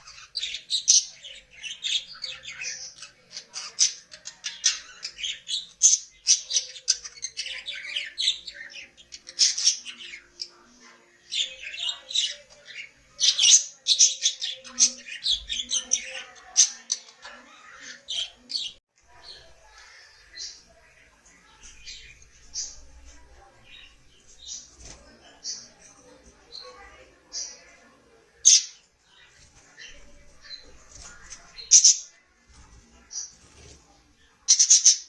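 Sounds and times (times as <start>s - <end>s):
budgerigars chirping and squawking: 0.0s - 10.6s, 11.2s - 20.8s, 28.4s - 32.1s, 33.0s - 35.0s.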